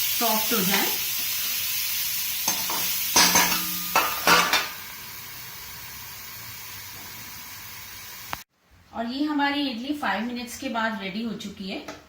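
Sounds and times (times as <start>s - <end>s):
vegetables sizzling in oil: 0.0s - 8.5s.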